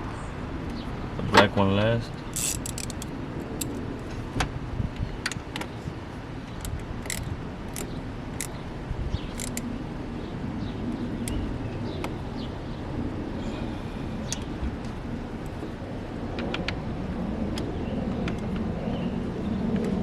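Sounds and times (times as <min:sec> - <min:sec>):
wrench clicking on metal clamps: 0:02.3 - 0:03.8, 0:06.6 - 0:08.6, 0:09.3 - 0:09.7.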